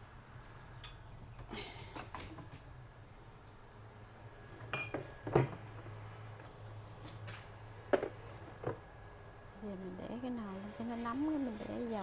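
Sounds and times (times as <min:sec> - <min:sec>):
cookware clinking on a stovetop: 0:04.6 - 0:05.6.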